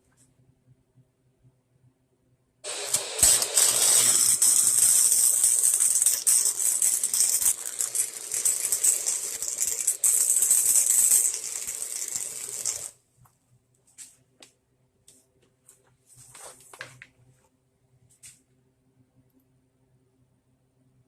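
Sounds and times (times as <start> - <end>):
arc welding crackling sizzle: 2.6 - 13.0.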